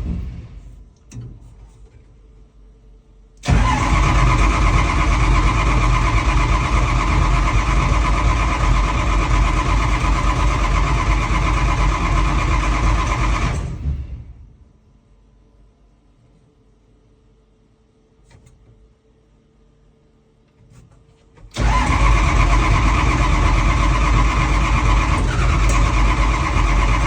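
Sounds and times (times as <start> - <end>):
engine starting and running: 3.4 - 14.5, 21.5 - 27.0.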